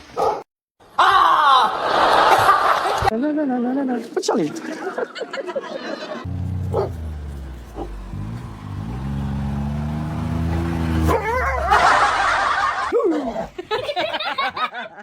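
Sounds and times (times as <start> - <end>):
small dog barking and whining: 11.0 - 11.8
person laughing: 11.2 - 15.0.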